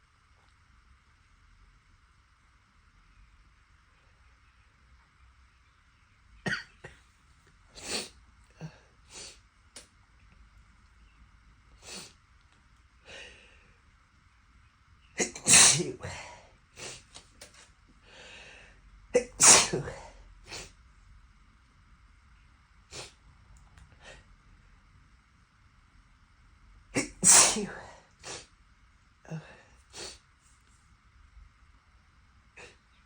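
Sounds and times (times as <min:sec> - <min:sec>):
sniffing: 0:07.7 - 0:09.4, 0:11.8 - 0:12.2, 0:22.9 - 0:23.2, 0:27.0 - 0:28.5, 0:29.3 - 0:30.2
man sneezing: 0:15.2 - 0:17.0, 0:19.2 - 0:20.7, 0:27.0 - 0:28.5.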